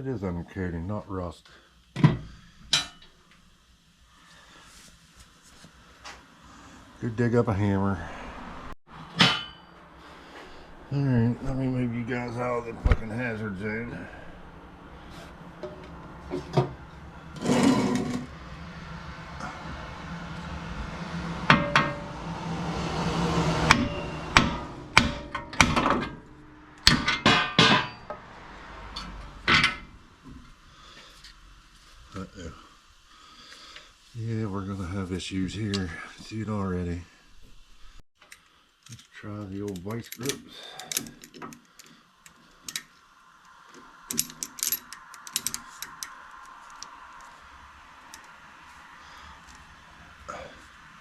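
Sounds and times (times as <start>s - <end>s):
metallic clicks of hand tools: 38.2s - 42.9s, 44.1s - 47.0s.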